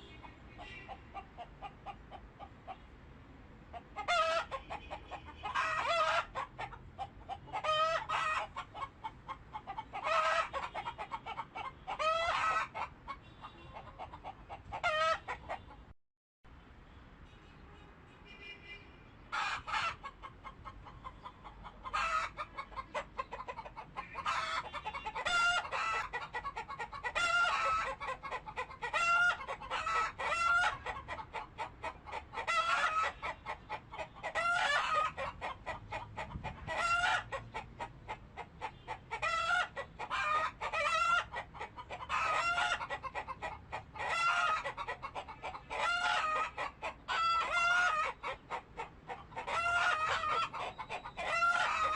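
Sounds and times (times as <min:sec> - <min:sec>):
chickens clucking: 0:00.0 - 0:02.9, 0:03.7 - 0:15.9, 0:19.3 - 0:51.9.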